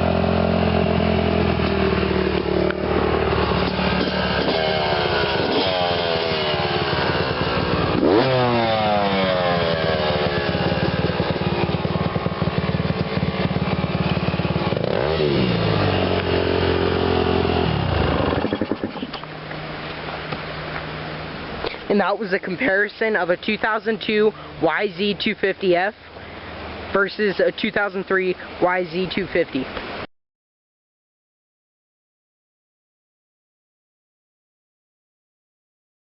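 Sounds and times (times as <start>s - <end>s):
motorcycle engine idling and revving: 0.0s - 22.4s.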